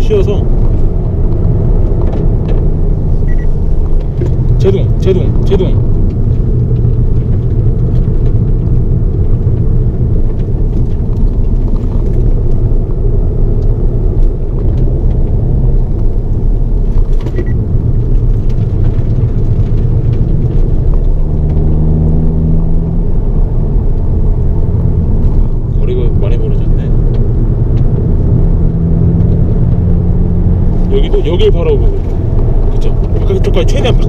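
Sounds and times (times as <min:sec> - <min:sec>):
road rumble inside car: 0:00.0 - 0:34.0
car engine revving hard: 0:19.6 - 0:34.0.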